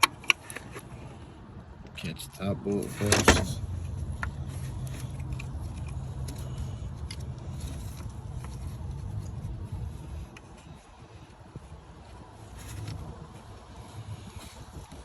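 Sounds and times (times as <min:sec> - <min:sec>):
hand tool clicks and scrapes: 0:00.0 - 0:01.2, 0:02.8 - 0:10.8.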